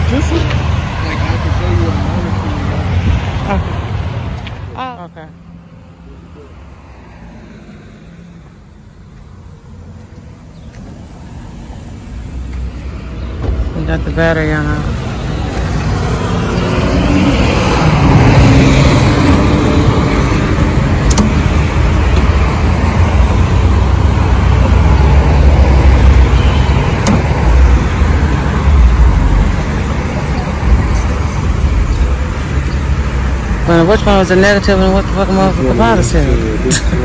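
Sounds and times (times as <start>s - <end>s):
vehicle engine and road rumble: 0.0s - 37.0s.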